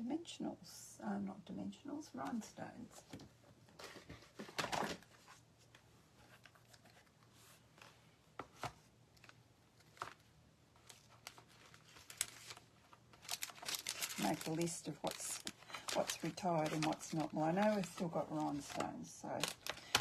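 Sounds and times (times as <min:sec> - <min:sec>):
rustle of craft supplies: 0:01.2 - 0:20.0.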